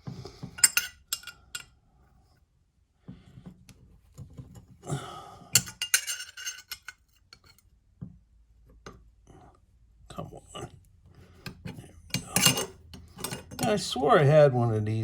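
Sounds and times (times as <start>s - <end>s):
metal tools clinking: 0.6s - 1.7s, 5.6s - 7.5s, 12.1s - 13.8s.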